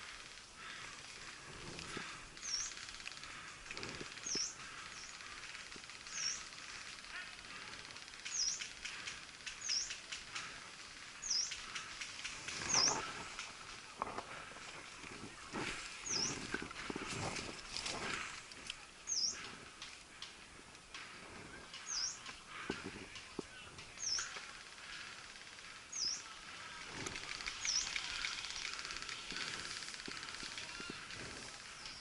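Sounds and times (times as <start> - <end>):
rustling and brushing: 12.2 - 18.9.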